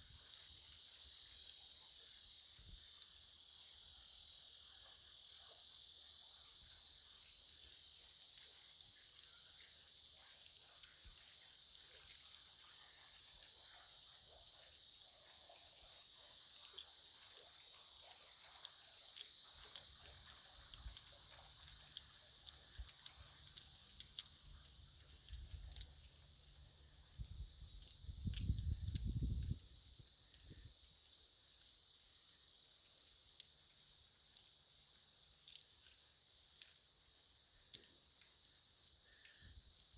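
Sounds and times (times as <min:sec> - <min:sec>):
crickets and insects chirring: 0:00.0 - 0:39.9.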